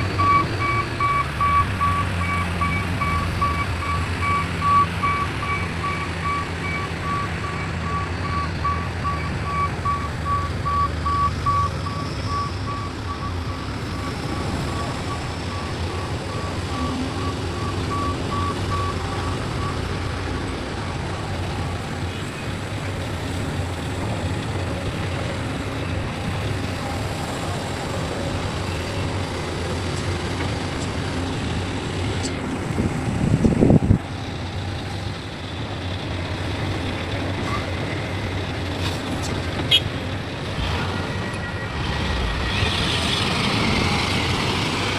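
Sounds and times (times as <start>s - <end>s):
heavy diesel machinery running: 0.0s - 44.9s
reversing alarm beeping: 0.1s - 20.5s.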